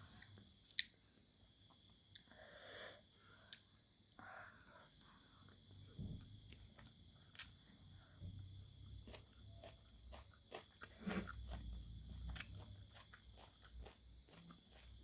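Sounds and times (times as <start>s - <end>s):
person chewing: 6.5s - 7.6s, 8.8s - 15.0s.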